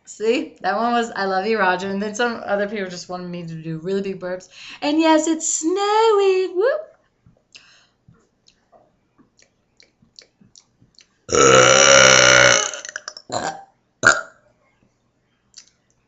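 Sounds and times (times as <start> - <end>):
girl burping loudly: 11.3 - 14.4.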